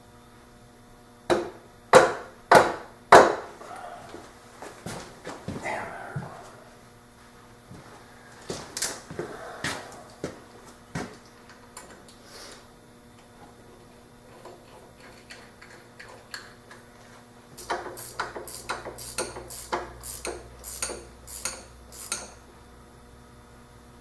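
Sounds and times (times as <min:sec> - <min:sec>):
metallic clicks and clinks: 0:14.7 - 0:16.8.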